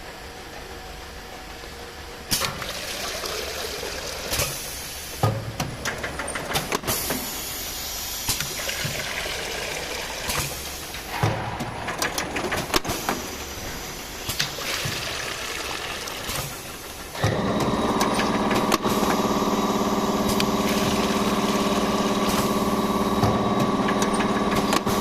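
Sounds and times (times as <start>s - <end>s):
water filling machine hiss: 2.3s - 5.8s, 6.6s - 11.8s, 12.6s - 25.0s
mechanism clicks and clacks: 5.2s - 7.3s, 10.3s - 13.3s, 16.1s - 19.2s, 20.2s - 25.0s.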